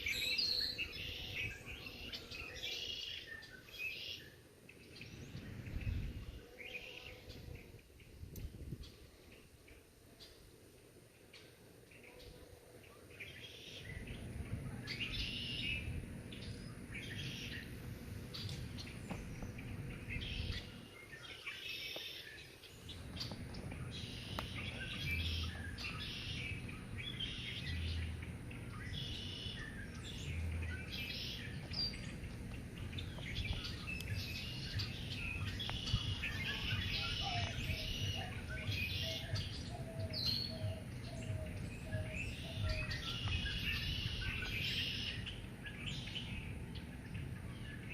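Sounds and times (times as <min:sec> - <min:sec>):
repeated low bird notes: 0:00.0 - 0:47.9
songbirds chirping: 0:00.0 - 0:47.9
low outdoor rumble: 0:13.8 - 0:21.4, 0:22.6 - 0:47.9.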